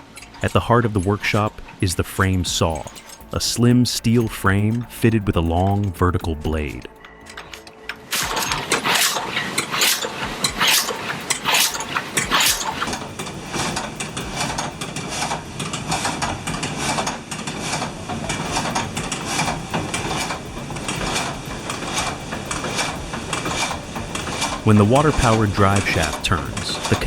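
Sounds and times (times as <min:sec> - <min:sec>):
frame saw knocking: 0:09.9 - 0:16.1, 0:18.4 - 0:27.0.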